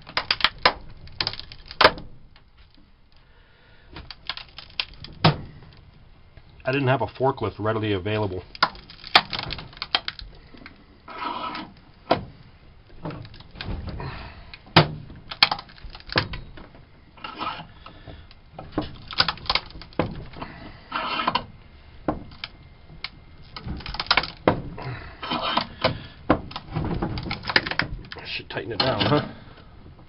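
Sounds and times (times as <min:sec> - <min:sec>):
plastic cracking and creaking: 0:00.0 - 0:03.3, 0:03.9 - 0:06.5, 0:08.1 - 0:30.0
scraping: 0:08.4 - 0:29.5
sharp clicks and knocks: 0:11.6 - 0:28.2.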